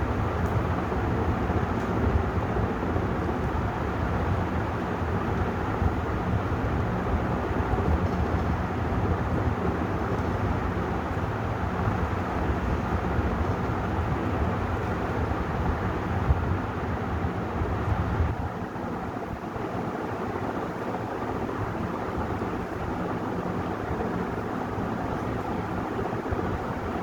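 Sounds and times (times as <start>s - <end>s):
ceiling fan air rush: 0.0s - 27.0s.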